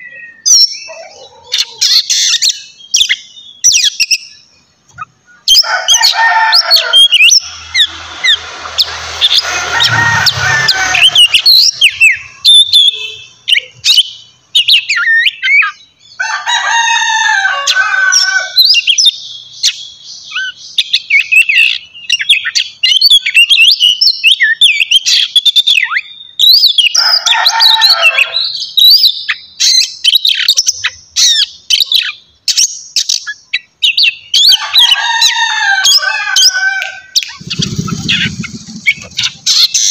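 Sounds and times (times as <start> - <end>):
bird harsh rasping calls: 0.0 - 15.9, 33.0 - 39.9
bird singing whistles and chirps: 6.7 - 15.9, 18.6 - 27.0.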